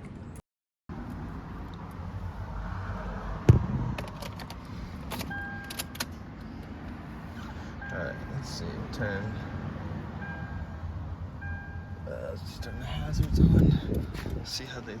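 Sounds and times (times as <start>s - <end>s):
car engine idling: 3.4s - 14.9s
heavy thump: 3.5s - 4.0s.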